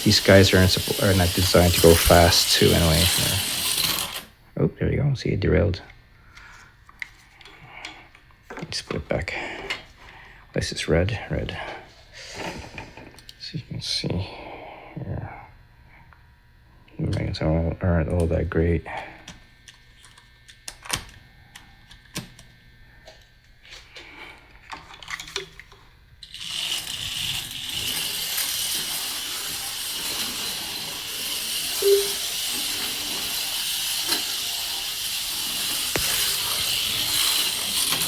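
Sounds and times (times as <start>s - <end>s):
slot car motor whirring: 0.0s - 4.4s, 26.2s - 38.0s.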